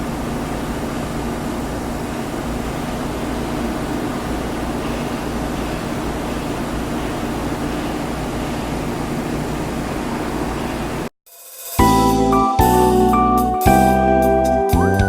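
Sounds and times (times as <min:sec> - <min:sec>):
electric train hum and hiss: 0:00.0 - 0:11.1.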